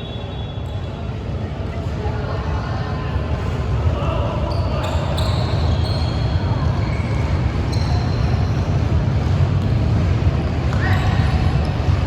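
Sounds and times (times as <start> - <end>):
shoes squeaking on floor: 4.5 - 8.8.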